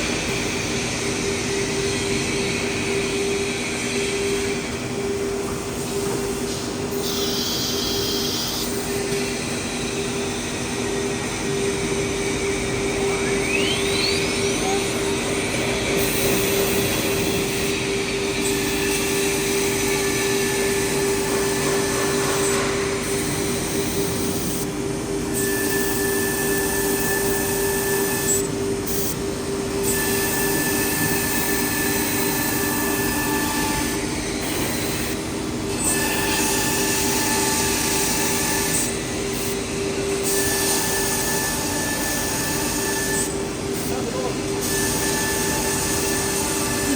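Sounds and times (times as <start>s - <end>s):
machine spindle hum with hiss: 0.0s - 46.9s
rising whine: 10.8s - 17.9s
high tone switching on and off: 13.0s - 14.8s.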